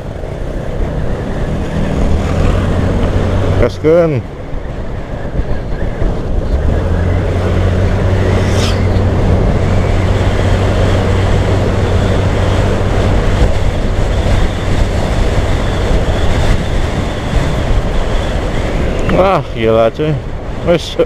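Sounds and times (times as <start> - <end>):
wind rush over microphone: 0.0 - 21.0.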